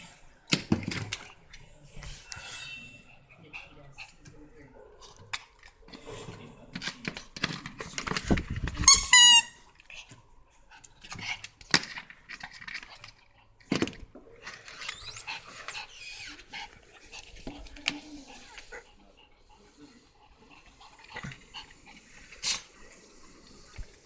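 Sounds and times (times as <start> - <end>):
puppy panting: 3.0 - 5.2, 14.8 - 22.8.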